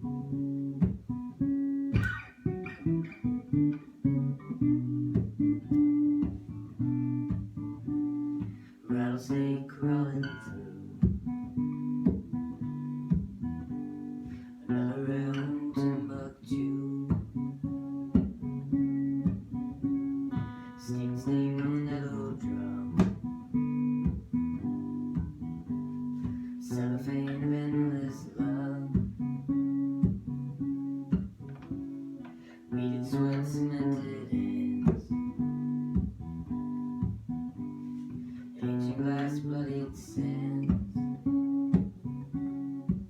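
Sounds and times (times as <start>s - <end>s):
acoustic guitar strumming: 0.0s - 43.0s
person singing: 8.4s - 11.1s, 14.6s - 18.3s, 20.3s - 23.5s, 26.2s - 29.6s, 32.2s - 35.6s, 38.2s - 41.4s.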